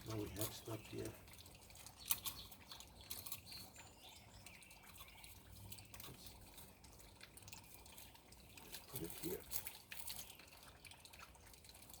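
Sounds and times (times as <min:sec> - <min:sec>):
water dripping and trickling: 0:00.0 - 0:12.0
faint bird chirp: 0:02.0 - 0:06.4.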